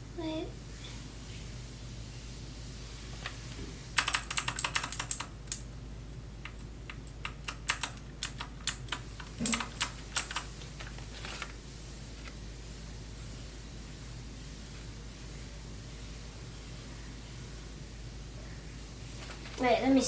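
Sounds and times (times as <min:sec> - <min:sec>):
clicky keyboard typing: 0:04.0 - 0:05.6, 0:06.4 - 0:11.5.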